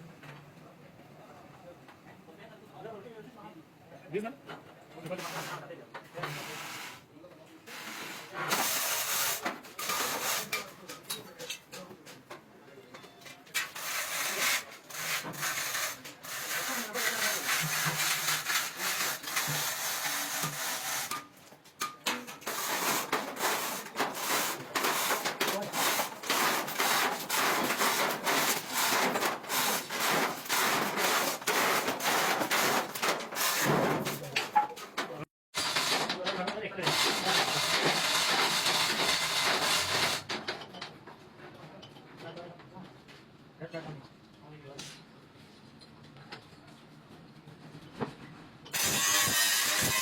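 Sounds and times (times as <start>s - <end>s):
hand tool rasping strokes: 13.6s - 21.2s, 22.4s - 34.2s, 48.8s - 50.0s
abrasive rubbing on metal: 48.8s - 50.0s.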